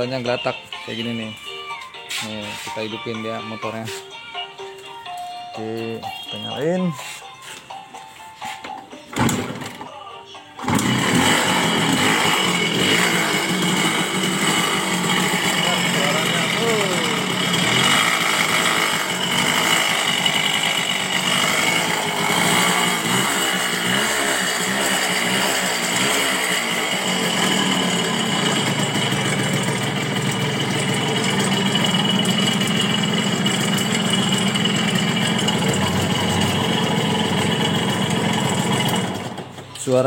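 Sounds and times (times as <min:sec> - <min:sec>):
two-stroke engine rattling and revving: 0:09.2 - 0:09.8, 0:10.6 - 0:40.0.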